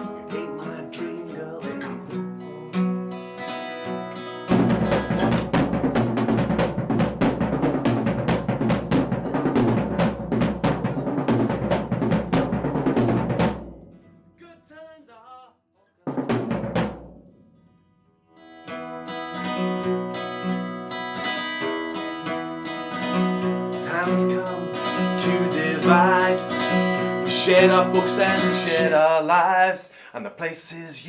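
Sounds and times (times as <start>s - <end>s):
strummed guitar chords: 0.0s - 14.8s, 16.9s - 29.6s
rock music with busy drumming: 4.5s - 13.8s, 16.1s - 17.2s, 23.9s - 26.4s.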